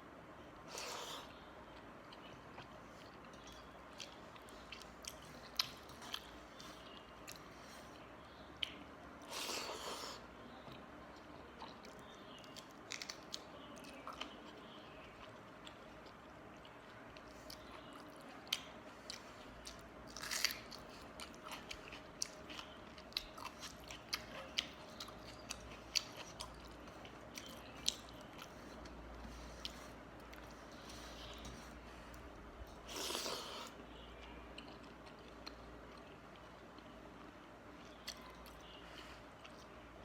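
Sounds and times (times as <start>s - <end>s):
wet chewing with clicks and smacks: 0.7s - 39.8s.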